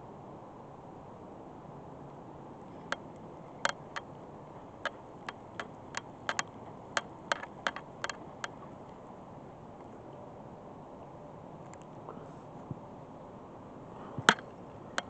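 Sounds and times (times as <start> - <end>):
sharp irregular clicks: 2.9 - 8.6, 14.2 - 15.0.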